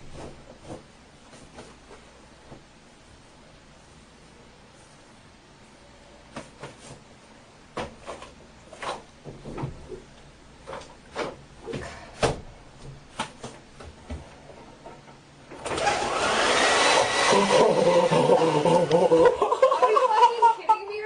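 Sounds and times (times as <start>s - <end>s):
hair dryer blowing: 15.6s - 19.4s.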